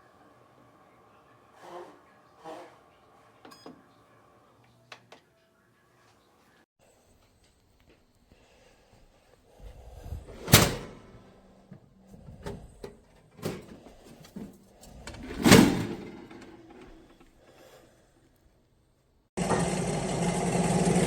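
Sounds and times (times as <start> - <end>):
loud kitchen clunks: 10.4 - 11.2, 15.1 - 17.0.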